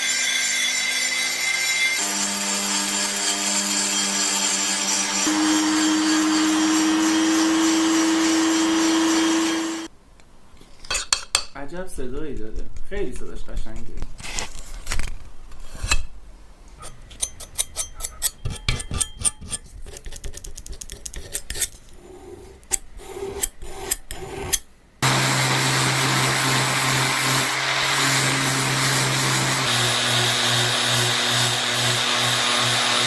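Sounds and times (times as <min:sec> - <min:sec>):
electric potato peeler running: 0:02.0 - 0:09.9, 0:25.0 - 0:33.0.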